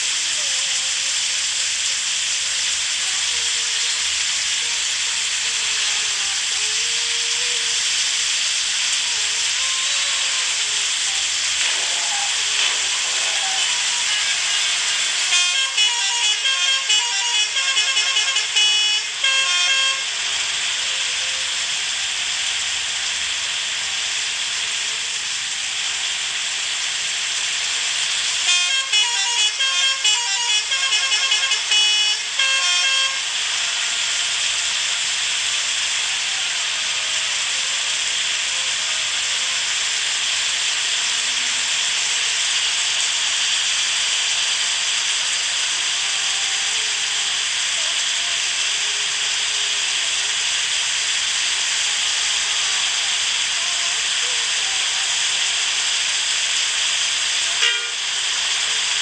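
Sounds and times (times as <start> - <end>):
steady hiss: 0.0 - 59.0
multi-tone musical bus horn: 9.6 - 22.3, 28.2 - 35.9, 56.8 - 58.8.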